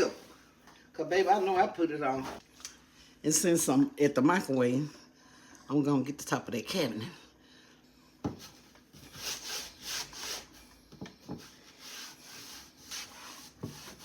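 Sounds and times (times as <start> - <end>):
cloth scrubbing a cabinet: 1.0 - 2.4, 8.4 - 10.6, 11.3 - 14.0.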